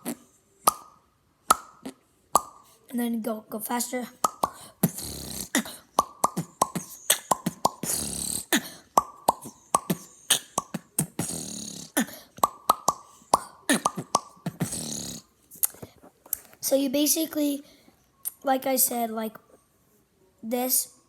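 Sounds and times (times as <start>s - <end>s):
mouth popping clicks: 0.0s - 2.7s, 4.2s - 16.5s
breathy hisses: 4.5s - 8.9s, 9.5s - 12.4s.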